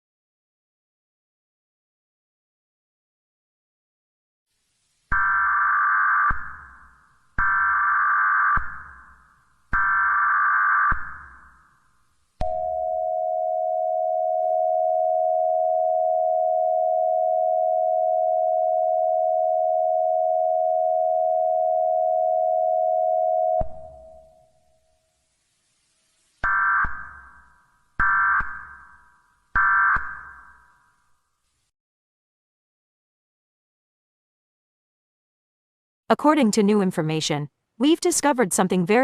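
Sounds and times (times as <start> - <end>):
steady two-tone attention signal: 12.5 - 24.6.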